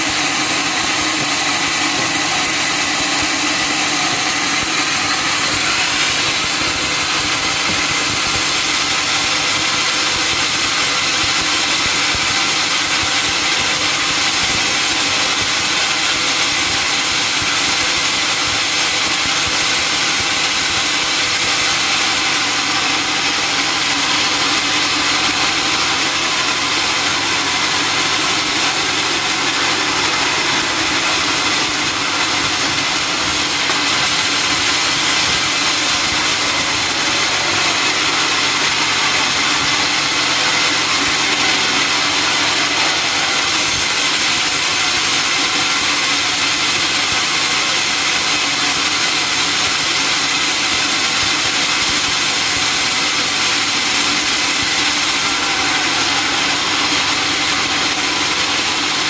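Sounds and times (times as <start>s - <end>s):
sawmill saw running: 0.0s - 59.0s.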